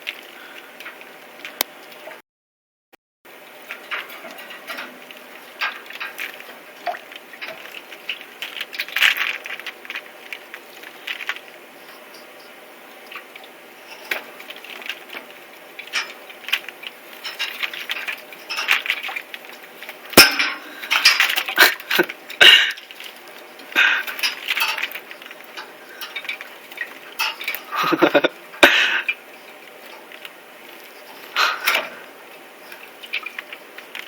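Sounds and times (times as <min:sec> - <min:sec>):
birds splashing water: 0:03.3 - 0:34.0
clinks of a dish: 0:20.2 - 0:20.7.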